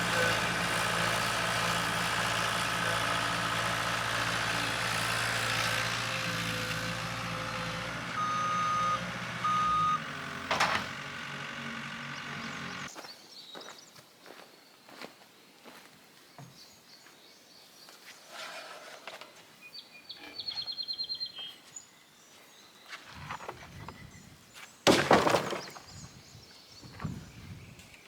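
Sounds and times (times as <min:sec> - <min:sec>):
wooden crash and clatter: 0:10.2 - 0:11.2, 0:24.8 - 0:26.0.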